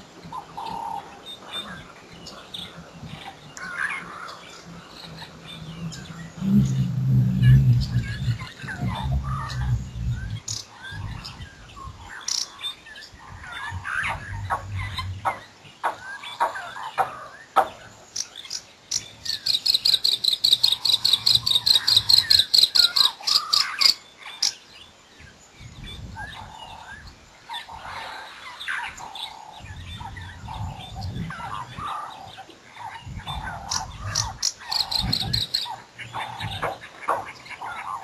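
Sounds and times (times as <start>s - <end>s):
songbirds chipping and twittering: 0.0s - 38.0s
low rumbling noise: 1.2s - 18.1s.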